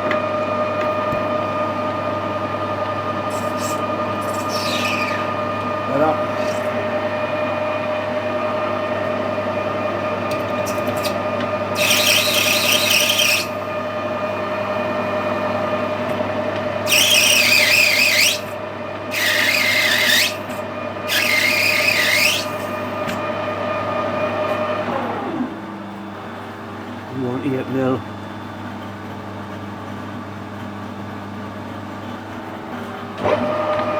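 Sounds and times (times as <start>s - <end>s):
metal lathe running: 0.0s - 24.6s
cutting tool squealing: 3.2s - 7.0s, 10.3s - 13.6s, 16.8s - 23.2s.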